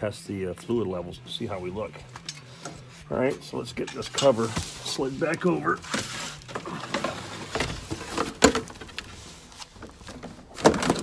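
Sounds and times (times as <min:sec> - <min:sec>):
plastic cover scraping and rubbing: 0:03.8 - 0:11.0.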